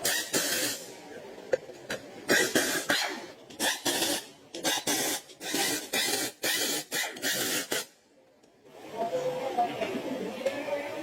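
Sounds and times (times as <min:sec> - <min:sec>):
hand tool rasping back and forth: 0:02.3 - 0:07.9.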